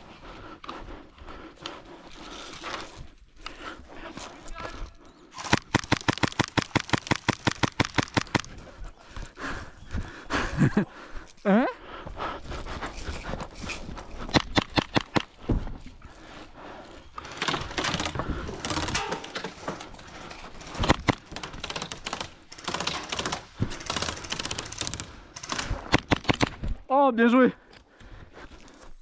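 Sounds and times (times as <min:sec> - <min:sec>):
rustling movement: 0:16.1 - 0:25.9
airsoft guns firing: 0:20.7 - 0:26.6.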